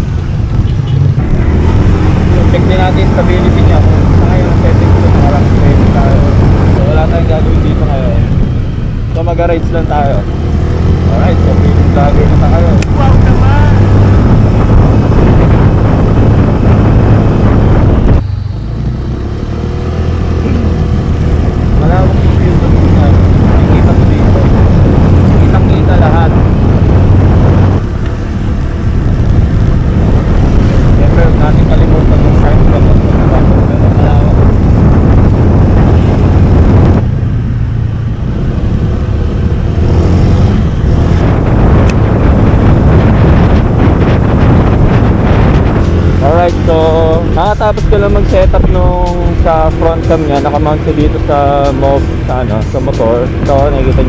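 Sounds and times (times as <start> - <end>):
road noise: 0.0 - 54.0
wind rush on microphone: 0.0 - 54.0
scooter engine running: 10.2 - 48.4.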